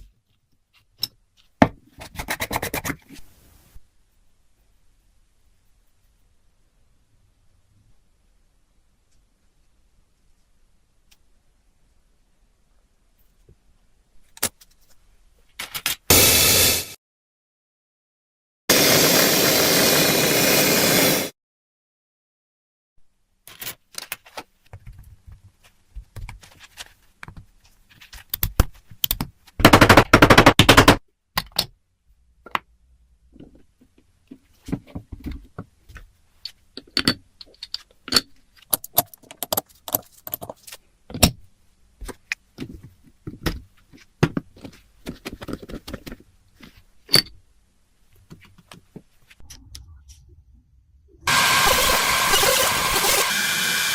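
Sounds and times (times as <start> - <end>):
rushing burst: 51.2 - 53.9.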